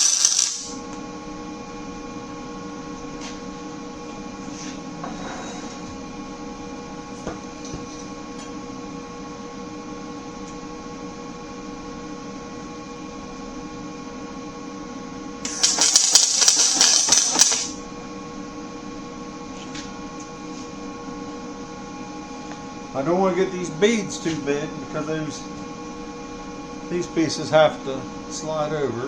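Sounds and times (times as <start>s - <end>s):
arc welding crackle: 0.0s - 0.8s, 15.4s - 17.8s
steady electrical hum: 0.0s - 29.0s.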